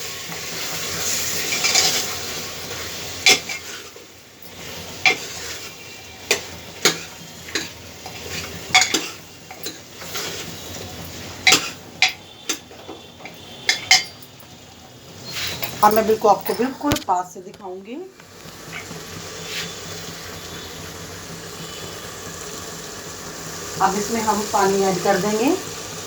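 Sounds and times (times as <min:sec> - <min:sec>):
frying hiss: 0:00.0 - 0:26.0
spoon clinking against pot: 0:06.3 - 0:09.9, 0:11.4 - 0:14.6.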